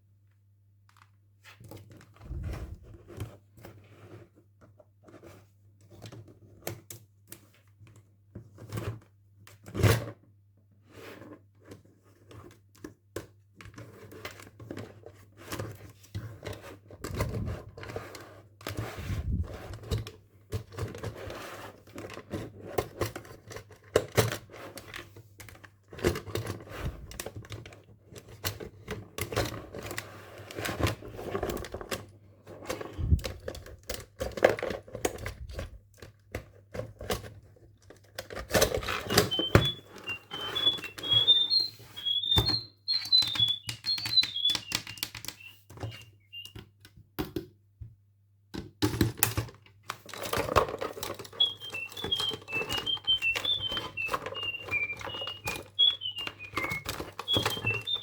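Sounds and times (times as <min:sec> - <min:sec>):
plastic toy packaging handled: 0:13.8 - 0:46.5, 0:49.2 - 0:58.0
electronic toy bird chirping: 0:38.8 - 0:46.6, 0:51.3 - 0:58.0.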